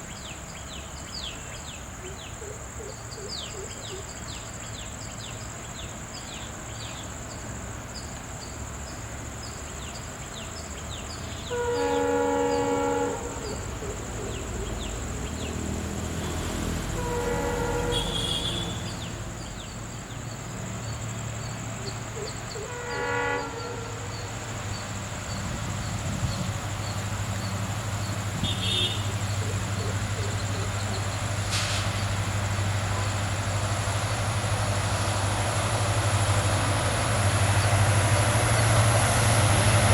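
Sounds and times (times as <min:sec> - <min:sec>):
locomotive engine drone: 0:00.0 - 0:39.9
locomotive horn blasts: 0:11.4 - 0:14.0, 0:15.5 - 0:19.3, 0:22.6 - 0:24.5, 0:26.2 - 0:29.5, 0:30.4 - 0:33.6.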